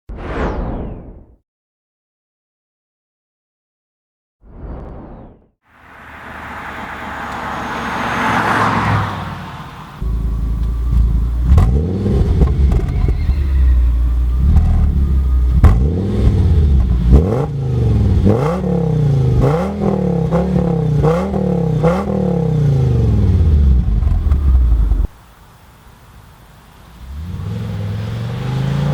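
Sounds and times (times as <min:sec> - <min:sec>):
rising rush of noise: 0:00.1 - 0:01.4, 0:04.5 - 0:10.4
car engine revving: 0:05.8 - 0:25.2, 0:26.9 - 0:28.9.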